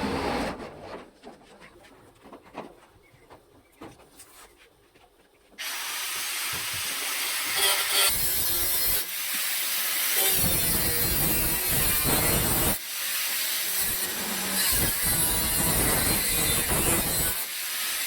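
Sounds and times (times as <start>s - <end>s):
arc welding crackling hiss: 5.6s - 18.0s.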